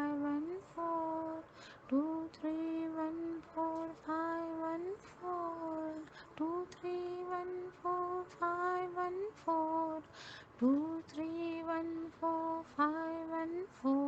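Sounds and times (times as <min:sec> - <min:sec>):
woman chanting: 0:00.0 - 0:14.0
woman breathing in: 0:01.5 - 0:01.9, 0:10.1 - 0:10.6.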